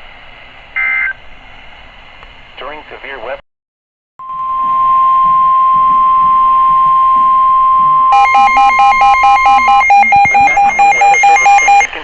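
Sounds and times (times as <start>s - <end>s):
pulsing electronic alarm beep: 4.2s - 11.9s
steady warning tone: 4.2s - 11.9s.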